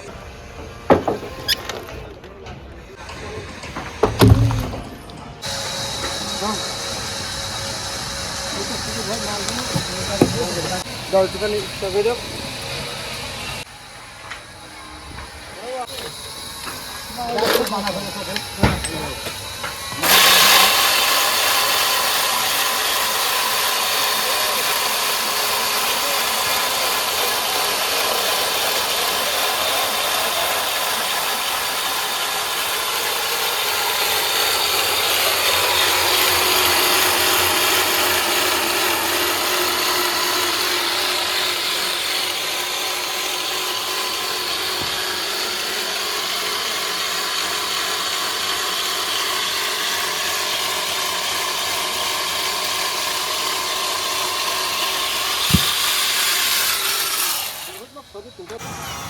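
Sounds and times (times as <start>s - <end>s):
woodworking machinery running: 0.0s - 59.0s.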